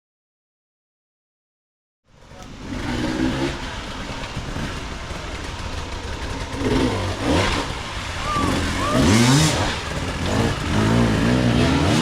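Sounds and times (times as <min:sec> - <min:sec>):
dirt bike engine running: 0:02.1 - 0:12.0
dense wash of noise: 0:02.5 - 0:12.0.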